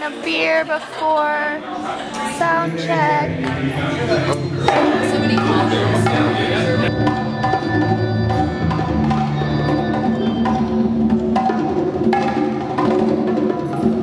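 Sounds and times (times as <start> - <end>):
low held bass notes: 2.9 - 12.4
percussion hits: 3.2 - 14.0.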